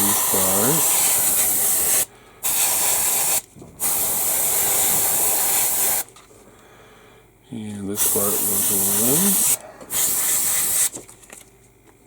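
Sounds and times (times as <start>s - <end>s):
airbrush spraying hiss: 0.0s - 6.1s, 8.0s - 10.9s.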